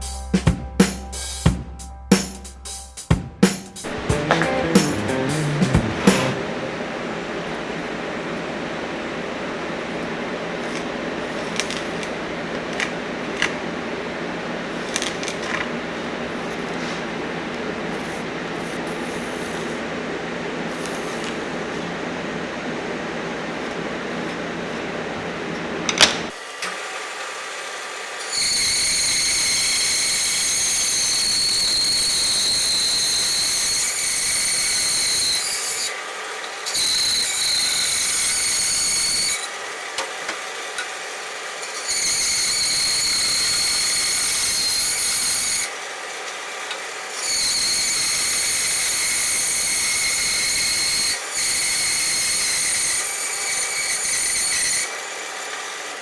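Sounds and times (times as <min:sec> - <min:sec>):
power tool whining: 0:03.9 - 0:13.8.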